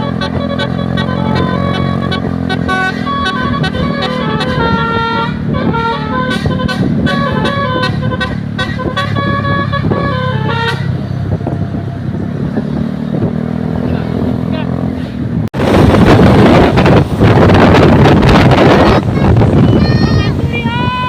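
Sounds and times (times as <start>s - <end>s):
bus horns playing a melody: 0.0s - 11.7s
bus engine running: 0.0s - 21.0s.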